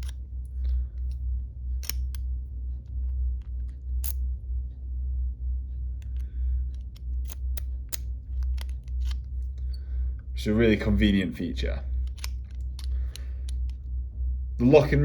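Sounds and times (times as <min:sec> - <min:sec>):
low steady hum: 0:00.0 - 0:15.0
key clicking in padlock: 0:01.8 - 0:02.2, 0:06.8 - 0:09.6, 0:12.0 - 0:13.7.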